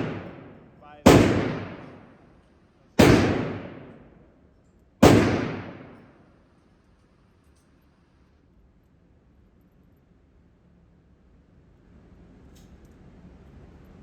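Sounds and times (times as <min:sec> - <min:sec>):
revolver shots echoing: 0:00.0 - 0:02.2, 0:03.0 - 0:04.2, 0:05.0 - 0:06.0.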